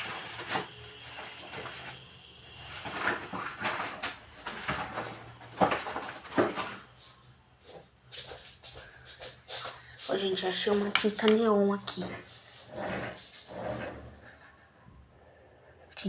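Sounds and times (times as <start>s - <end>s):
rummaging through a cupboard: 0.0s - 7.8s, 10.0s - 14.5s.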